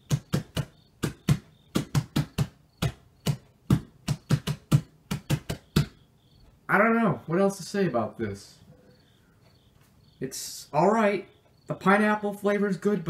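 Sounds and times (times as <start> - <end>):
sharp taps: 0.0 - 6.0.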